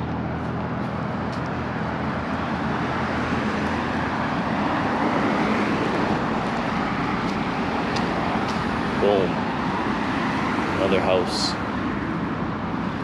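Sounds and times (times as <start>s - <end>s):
low engine hum: 0.0s - 13.0s
vehicle road noise: 0.0s - 13.0s.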